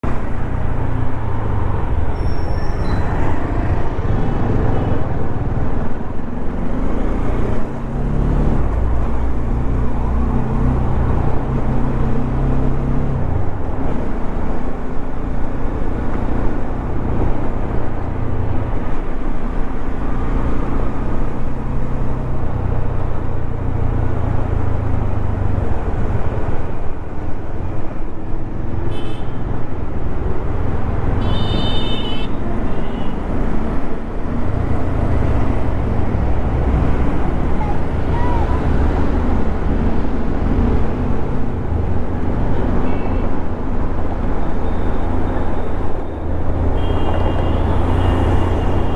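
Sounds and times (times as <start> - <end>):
traffic noise: 0.0 - 48.9
vehicle horn beeping: 31.2 - 33.2, 46.7 - 48.9.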